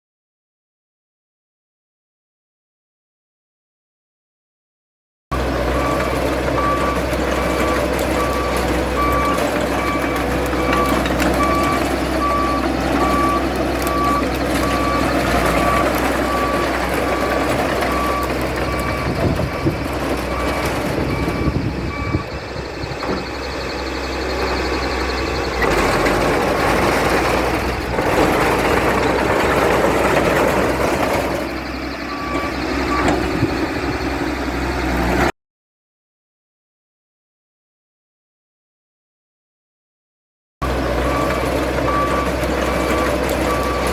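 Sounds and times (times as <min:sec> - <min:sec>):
bulldozer diesel engine running: 0:05.3 - 0:35.3, 0:40.6 - 0:43.9
reverse alarm beeping: 0:05.3 - 0:35.3, 0:41.0 - 0:43.9.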